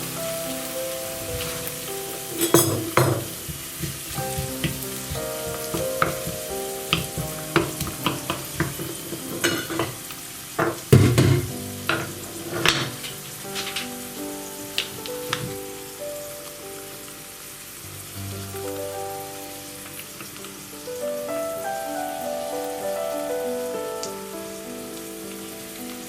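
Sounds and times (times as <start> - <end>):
food sizzling in oil: 0.0 - 26.0
utensil scraping pan: 1.3 - 10.0.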